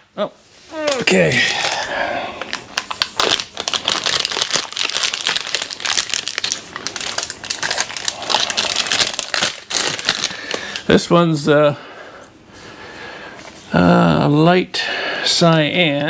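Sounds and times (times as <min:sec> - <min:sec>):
plastic wrapping crinkling: 0:00.6 - 0:11.0.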